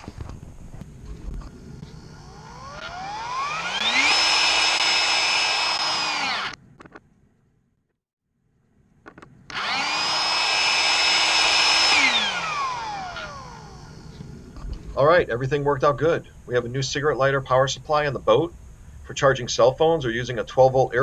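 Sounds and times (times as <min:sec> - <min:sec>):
small electric motor whine: 0:00.0 - 0:06.6, 0:09.5 - 0:14.7.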